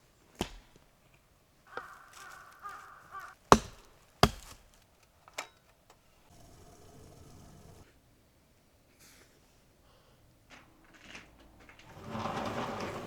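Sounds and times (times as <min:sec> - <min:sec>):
crow-like pitched call: 0:01.7 - 0:03.4
sharp chopping strikes: 0:03.5 - 0:04.8.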